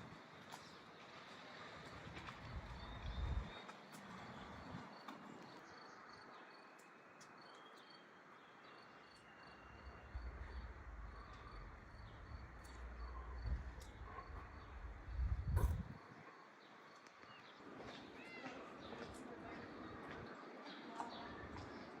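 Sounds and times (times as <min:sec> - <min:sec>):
faint high insect chirping: 0:04.9 - 0:17.4
low rumble: 0:09.9 - 0:16.1.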